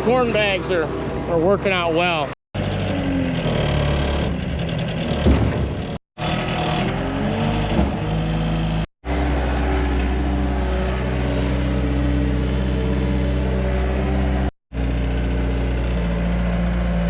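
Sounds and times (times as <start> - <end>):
tractor engine running: 0.0 - 17.0.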